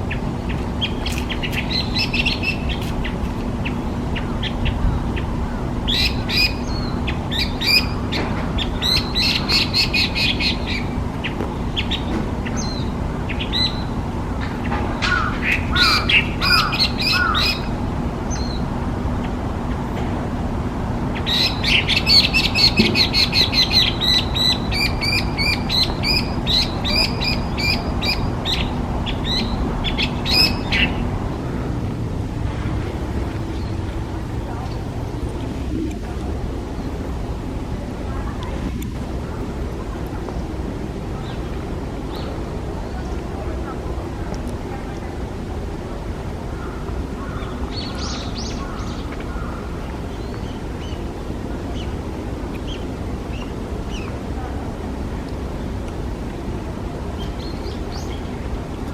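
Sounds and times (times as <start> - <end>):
steady low rumble: 25.3 - 48.0.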